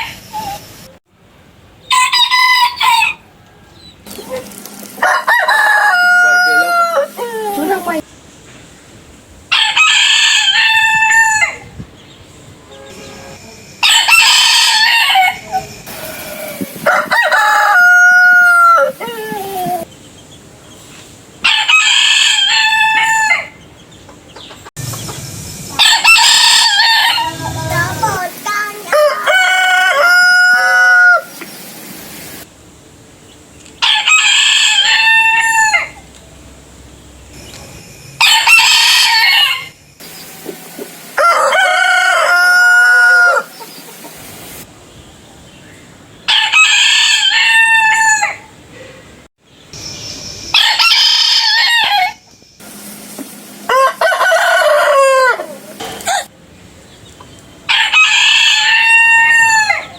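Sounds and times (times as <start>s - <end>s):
roosters crowing: 1.8s - 8.0s, 9.5s - 11.7s, 13.8s - 19.9s, 21.4s - 23.7s, 25.7s - 31.5s, 33.8s - 36.2s, 38.2s - 40.4s, 41.0s - 44.7s, 46.2s - 48.8s, 50.5s - 52.3s, 53.4s - 56.4s, 57.6s - 59.9s.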